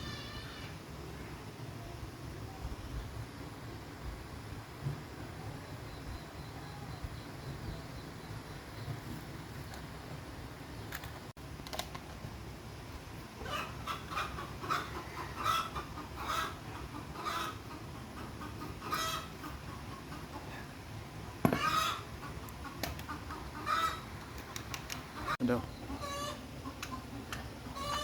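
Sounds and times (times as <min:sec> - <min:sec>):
chickens clucking: 0:13.4 - 0:20.9, 0:21.5 - 0:28.0.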